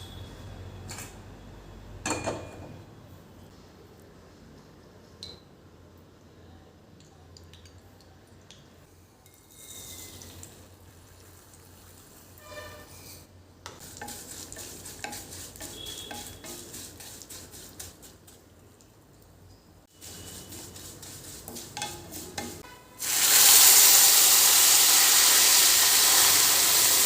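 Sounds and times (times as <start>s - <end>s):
utensils scraping pots and pans: 12.4s - 18.1s, 20.1s - 22.8s.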